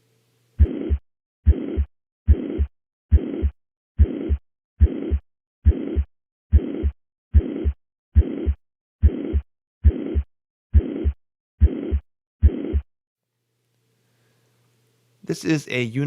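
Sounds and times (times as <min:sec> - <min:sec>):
heartbeat through stethoscope: 0:00.6 - 0:12.9
high-pitched heart murmur: 0:00.6 - 0:12.9.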